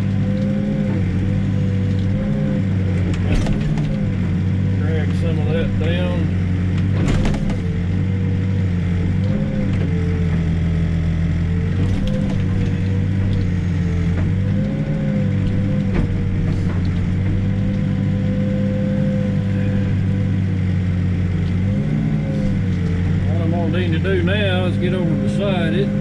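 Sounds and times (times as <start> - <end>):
backhoe diesel engine running: 0.0 - 26.0
sharp knocks: 6.8 - 7.8.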